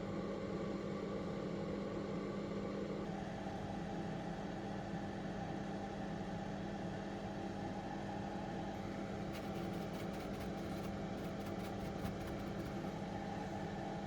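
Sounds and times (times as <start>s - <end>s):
steady electrical hum: 3.0s - 14.0s.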